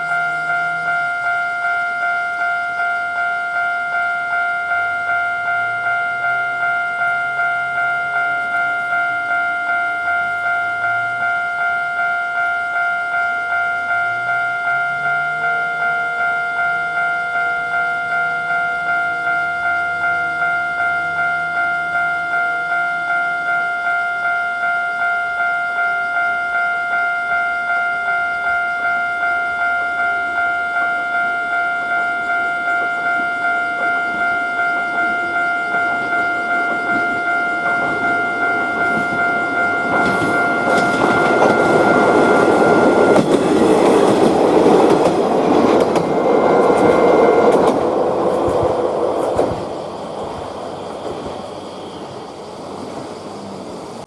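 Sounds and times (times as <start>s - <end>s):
level crossing warning bell: 0.0s - 54.0s
train passing rumble: 28.4s - 54.0s.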